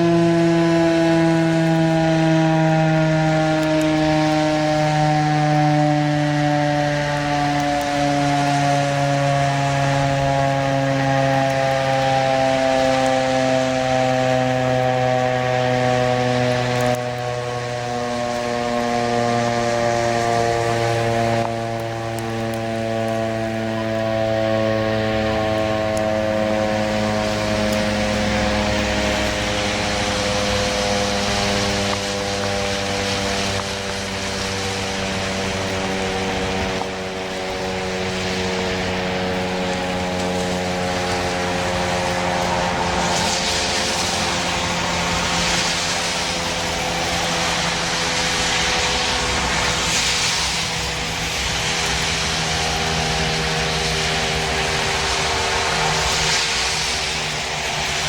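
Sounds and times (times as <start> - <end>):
dual-tone fire siren: 0.0 - 58.0
rushing hiss: 26.9 - 58.0.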